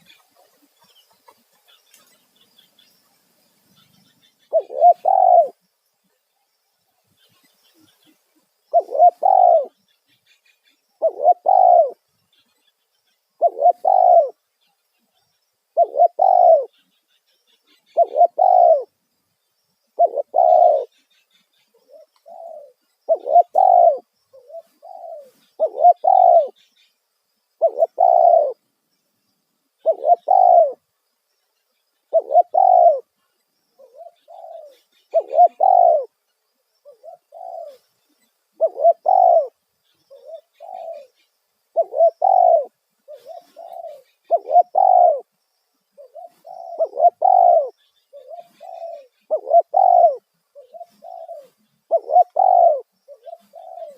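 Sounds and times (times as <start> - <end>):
dove cooing: 3.8 - 5.6, 7.3 - 9.8, 10.4 - 12.0, 13.4 - 14.4, 15.7 - 16.9, 17.7 - 18.9, 20.0 - 21.0, 21.8 - 26.6, 27.6 - 28.6, 29.8 - 30.8, 32.1 - 33.1, 33.8 - 36.2, 36.8 - 37.9, 38.6 - 45.3, 46.0 - 53.9.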